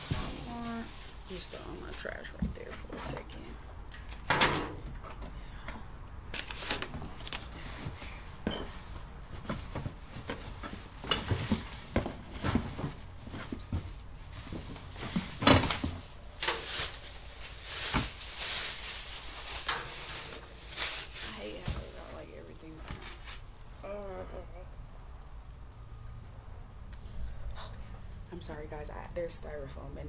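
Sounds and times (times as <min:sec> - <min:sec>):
cardboard rustling and scraping: 0:00.0 - 0:01.2, 0:06.4 - 0:22.3.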